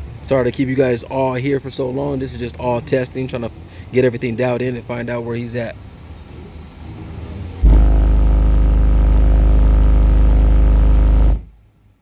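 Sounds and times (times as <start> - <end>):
subwoofer low bass tone: 7.6 - 11.5.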